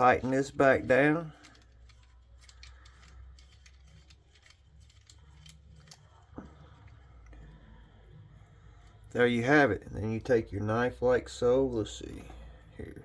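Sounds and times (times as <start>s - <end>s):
small clicks and scrapes: 0.0s - 7.5s.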